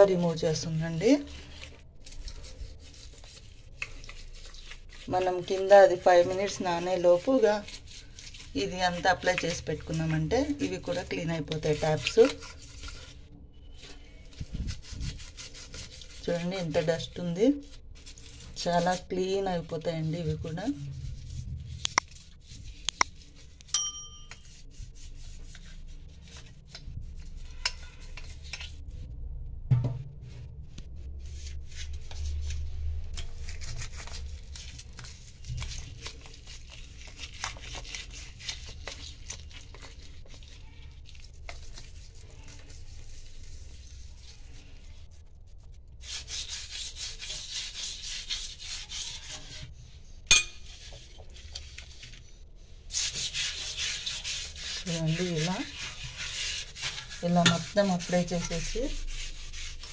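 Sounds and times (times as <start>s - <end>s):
scrubbing on metal taps: 1.2s - 20.3s, 21.8s - 28.8s, 50.3s - 52.2s, 52.9s - 59.9s
metallic clinks: 23.7s - 24.4s.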